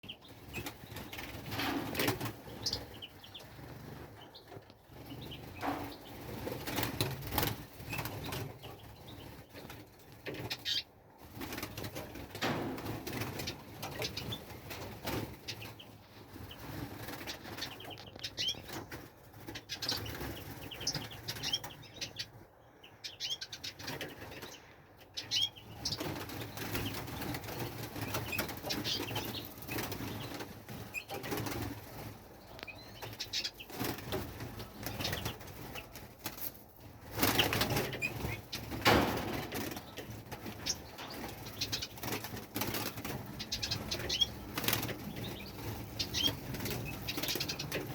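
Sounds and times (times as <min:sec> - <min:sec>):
small birds fluttering wings: 0:00.1 - 0:22.4, 0:23.6 - 0:47.9
bird chirps: 0:15.4 - 0:18.9, 0:19.5 - 0:31.3, 0:43.3 - 0:47.9.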